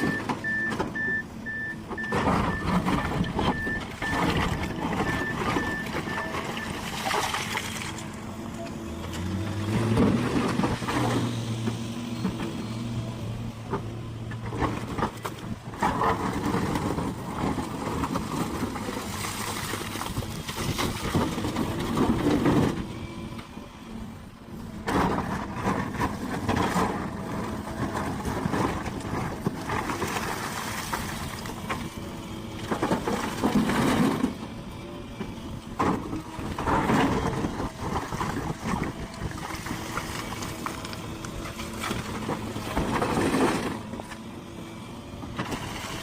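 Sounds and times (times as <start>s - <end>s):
diesel machinery engines running: 0.0s - 46.0s.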